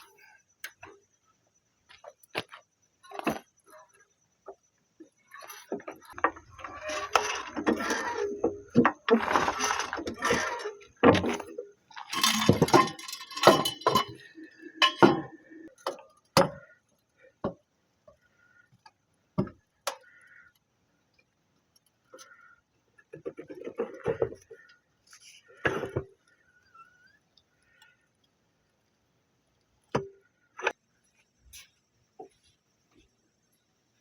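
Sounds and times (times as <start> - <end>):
metal hand tools clattering: 6.1 - 15.4.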